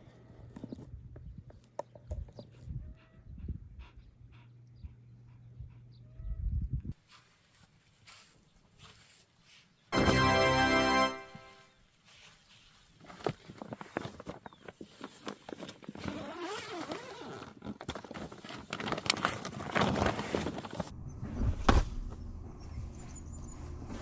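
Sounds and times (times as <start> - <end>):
rustling: 11.9 - 20.9.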